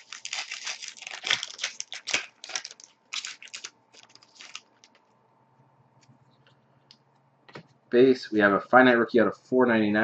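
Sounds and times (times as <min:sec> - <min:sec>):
foil wrapper crinkling: 0:00.0 - 0:05.1.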